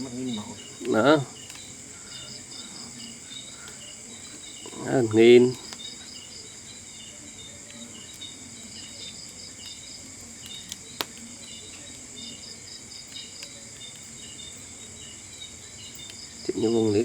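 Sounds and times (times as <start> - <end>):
insects chirping: 0.0 - 17.0
sharp clicks: 10.4 - 11.3.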